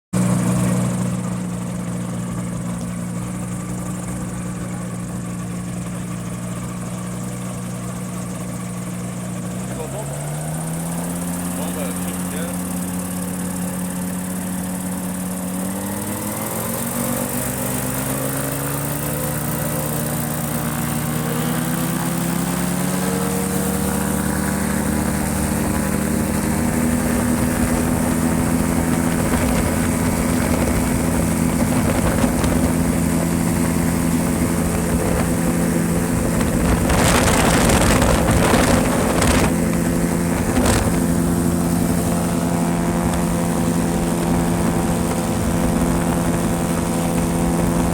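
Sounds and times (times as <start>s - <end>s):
airplane engine and propeller: 0.2s - 47.9s
wind noise bursts: 20.4s - 47.9s.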